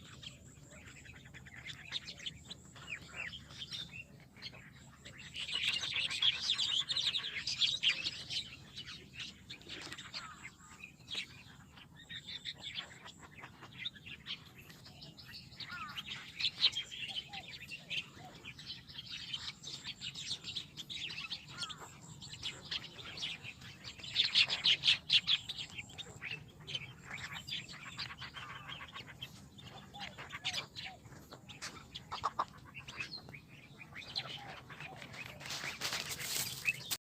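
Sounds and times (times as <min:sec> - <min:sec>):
small birds chirping: 0:00.0 - 0:37.0.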